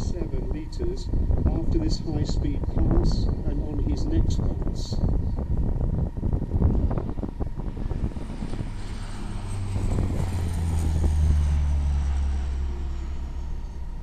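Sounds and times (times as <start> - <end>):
high whine falling in pitch: 0.0 - 14.0
turboprop aircraft flypast: 0.0 - 14.0.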